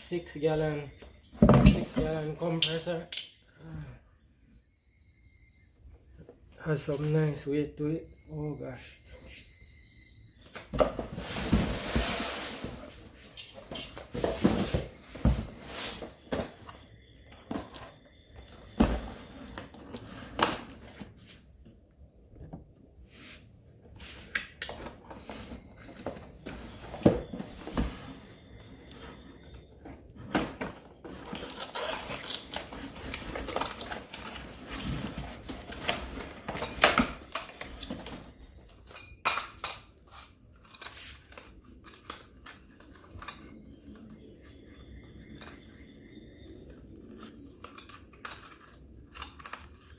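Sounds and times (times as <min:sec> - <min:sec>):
packaging rustling and tearing: 0:31.0 - 0:37.9.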